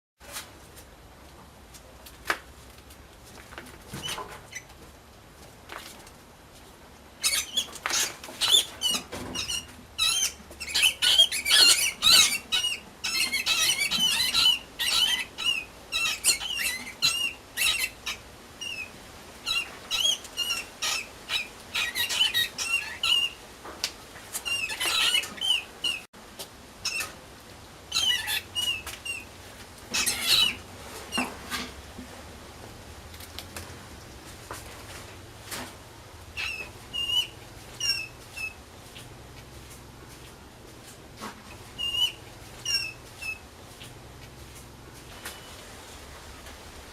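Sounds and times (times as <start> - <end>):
mouse squeaking: 7.2 - 18.9, 19.5 - 23.4, 24.4 - 26.0, 27.9 - 29.2, 29.9 - 31.2, 36.4 - 38.6, 41.8 - 43.4.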